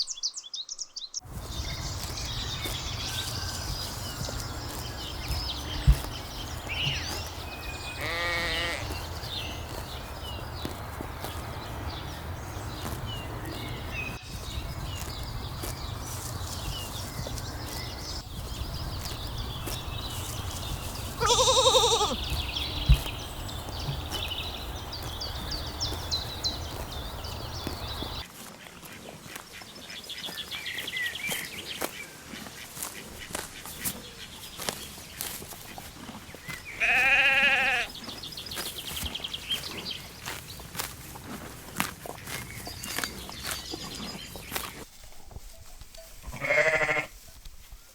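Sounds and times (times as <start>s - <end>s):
small birds chirping: 0.0s - 47.3s
sheep bleating: 7.9s - 9.0s, 21.2s - 22.3s, 36.8s - 37.9s, 46.2s - 47.2s.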